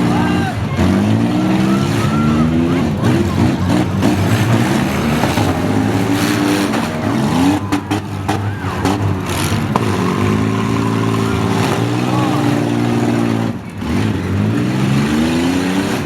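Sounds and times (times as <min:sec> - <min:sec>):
car engines revving: 0:00.0 - 0:16.0
cars ramming knocks: 0:02.9 - 0:14.4.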